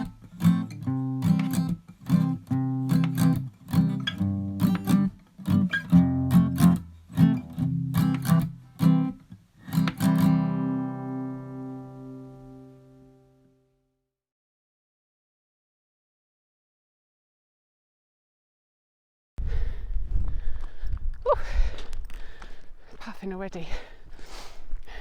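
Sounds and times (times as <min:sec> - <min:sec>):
strummed guitar chords: 0:00.0 - 0:13.6.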